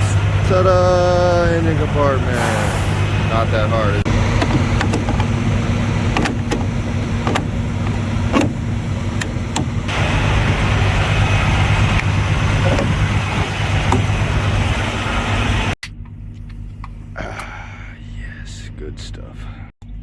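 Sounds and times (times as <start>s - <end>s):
diesel truck engine idling: 0.0s - 18.7s.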